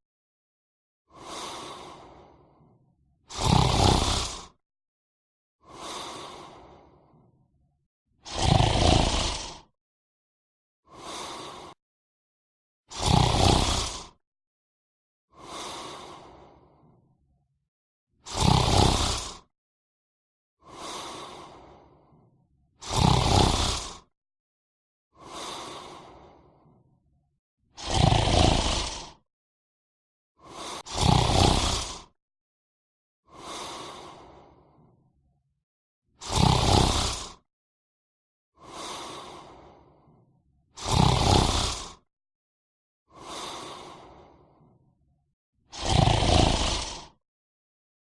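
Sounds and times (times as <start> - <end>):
person snoring: 1.1 - 2.7, 3.3 - 4.6, 5.6 - 7.2, 8.2 - 9.8, 10.9 - 11.8, 12.9 - 14.2, 15.3 - 17.0, 18.2 - 19.5, 20.6 - 24.2, 25.2 - 26.9, 27.8 - 29.3, 30.4 - 32.2, 33.3 - 35.0, 36.2 - 37.5, 38.6 - 40.2, 40.8 - 42.1, 43.1 - 44.8, 45.7 - 47.2
quiet breaths: 1.1 - 2.8, 5.6 - 7.4, 10.9 - 11.8, 15.3 - 17.1, 20.6 - 22.3, 25.2 - 27.0, 30.4 - 30.8, 33.3 - 35.0, 38.6 - 40.3, 43.1 - 44.8.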